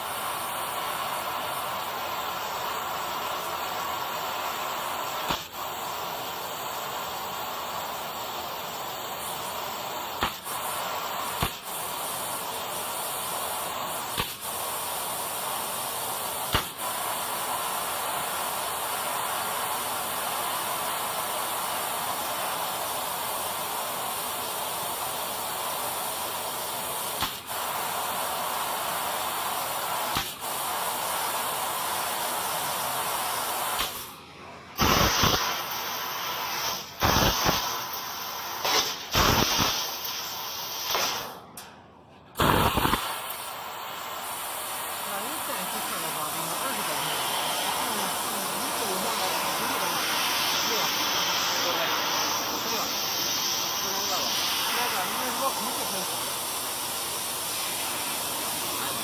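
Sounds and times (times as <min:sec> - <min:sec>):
laser cutting jet hissing: 0:00.0 - 0:34.2, 0:34.8 - 0:41.4, 0:42.4 - 0:59.0
loud sharp pops: 0:05.2 - 0:05.6, 0:10.2 - 0:10.6, 0:11.2 - 0:11.8, 0:14.1 - 0:14.5, 0:16.4 - 0:16.8, 0:27.1 - 0:27.6, 0:30.0 - 0:30.5, 0:33.6 - 0:34.2, 0:34.8 - 0:35.9, 0:36.6 - 0:38.0, 0:38.6 - 0:41.4, 0:42.4 - 0:43.6.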